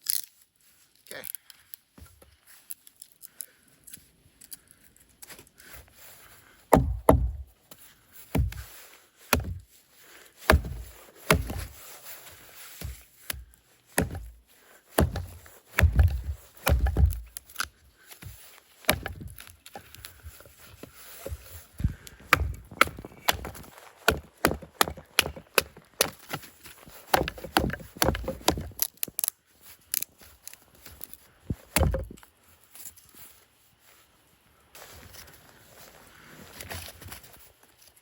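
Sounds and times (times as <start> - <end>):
axe chopping firewood: 6.7 - 9.7, 10.4 - 11.8, 12.7 - 29.3, 31.5 - 32.2.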